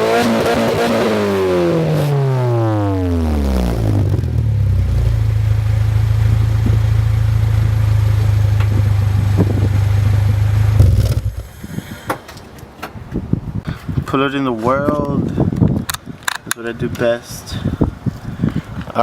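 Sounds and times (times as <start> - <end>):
car engine idling without silencer: 2.6 - 12.0.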